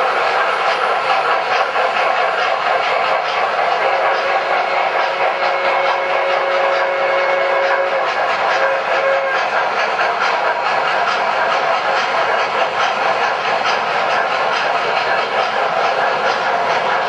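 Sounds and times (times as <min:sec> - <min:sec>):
model steam locomotives chuffing: 0:00.0 - 0:17.0
wheels clicking over track: 0:00.0 - 0:17.0.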